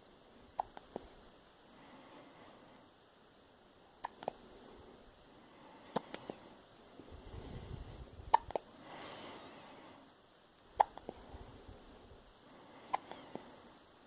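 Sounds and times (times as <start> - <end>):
sharp hiccups: 0.6 - 0.8, 4.0 - 4.4, 8.3 - 8.6, 10.8 - 11.0.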